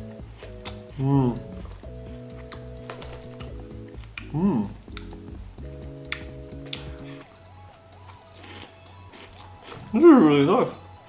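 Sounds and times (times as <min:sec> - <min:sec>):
background music: 0:00.0 - 0:11.0
crunchy pastry bites: 0:06.1 - 0:10.8.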